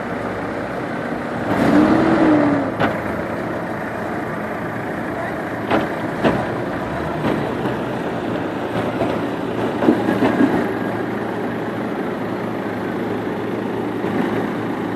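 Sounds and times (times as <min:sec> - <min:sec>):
diesel engine running under load: 0:00.0 - 0:14.9.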